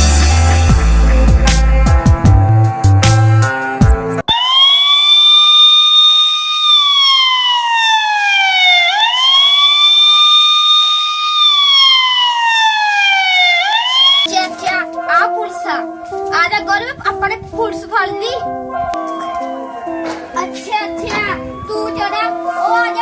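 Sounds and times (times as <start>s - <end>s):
police siren wailing: 4.3s - 14.3s, 18.9s - 23.0s.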